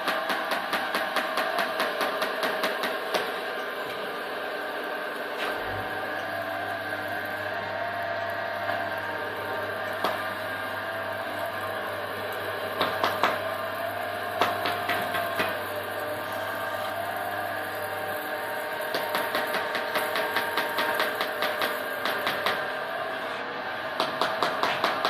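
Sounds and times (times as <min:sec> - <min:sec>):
sharp metallic clicks and knocks: 0:00.0 - 0:04.1, 0:24.0 - 0:25.0
electric motor whine: 0:03.1 - 0:24.0.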